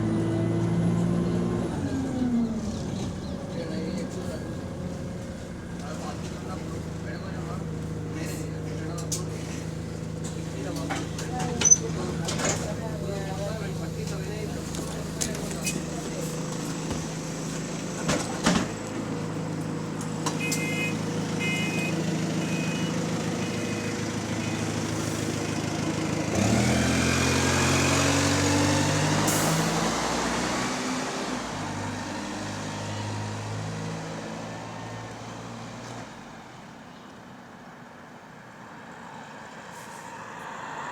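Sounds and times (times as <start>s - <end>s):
diesel bus engine: 0.0s - 40.9s
short beeps: 20.4s - 22.9s.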